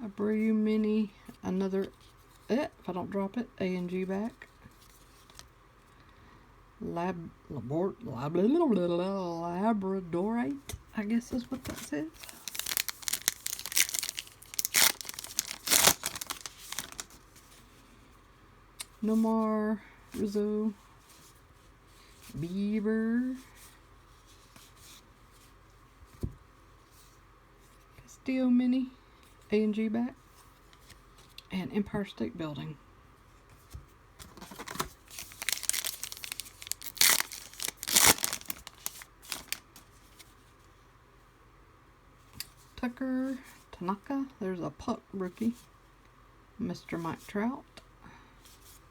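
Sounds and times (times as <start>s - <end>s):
trading cards rustling: 11.2s - 17.6s, 34.2s - 40.2s
wrapper tearing and crinkling: 12.2s - 17.2s, 34.3s - 39.7s.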